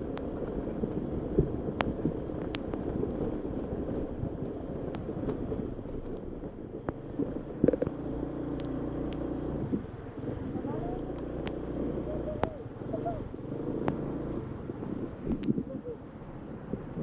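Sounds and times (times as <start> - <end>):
scooter engine running: 4.8 - 16.9
sharp clicks and knocks: 6.2 - 8.0.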